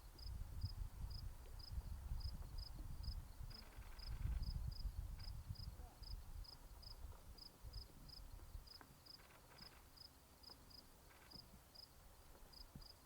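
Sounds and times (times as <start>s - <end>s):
cricket chirping: 1.6s - 5.7s, 7.7s - 11.9s.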